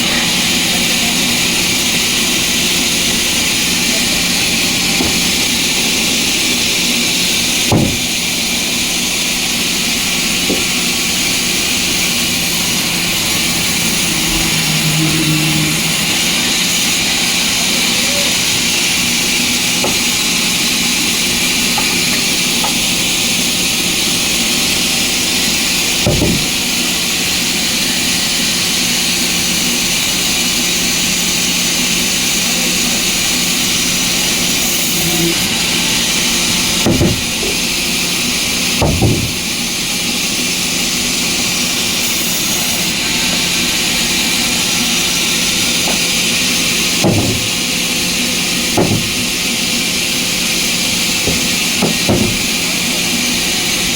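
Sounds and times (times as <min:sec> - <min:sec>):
sawmill machinery whirring: 0:00.0 - 0:53.9
wood knocks: 0:07.7 - 0:08.1, 0:26.1 - 0:26.5, 0:38.8 - 0:39.4, 0:47.0 - 0:47.6, 0:48.8 - 0:49.2, 0:51.3 - 0:52.5.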